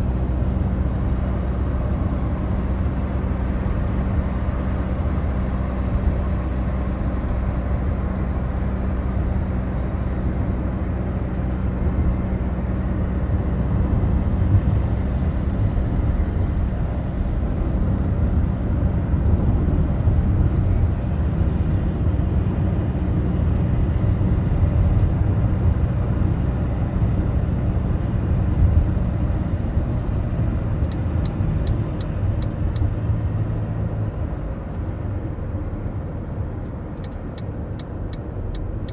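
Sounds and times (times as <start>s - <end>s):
car engine and road drone: 0.0s - 38.9s
light ticks: 30.8s - 32.9s, 36.6s - 38.9s.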